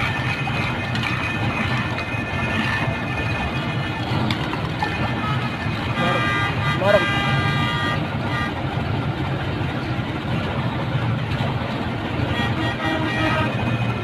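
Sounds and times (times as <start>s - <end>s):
street traffic: 0.0s - 14.0s.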